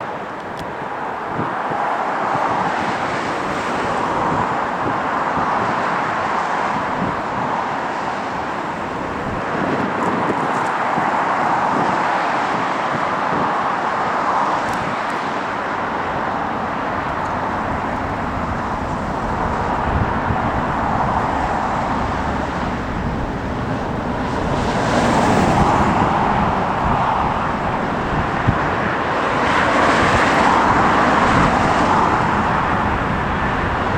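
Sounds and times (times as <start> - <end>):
wind buffeting microphone: 0.7 - 33.9
jet aircraft roar: 2.8 - 9.6, 14.4 - 33.9.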